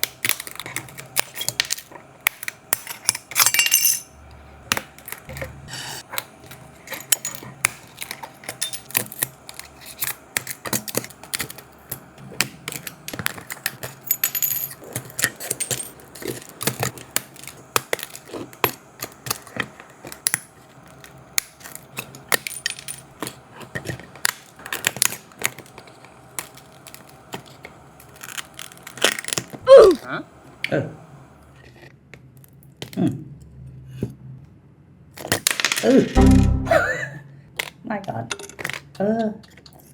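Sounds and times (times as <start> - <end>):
hand tools clicking and tapping: 0.0 - 4.1, 4.7 - 29.5.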